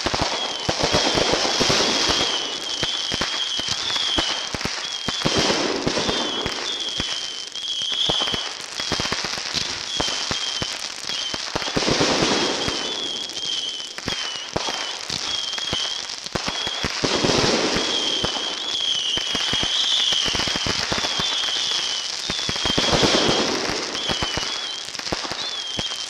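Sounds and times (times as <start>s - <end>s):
fireworks crackling and popping: 0.0s - 26.0s
wavering high whistle: 2.0s - 5.3s, 12.4s - 16.8s, 24.0s - 26.0s.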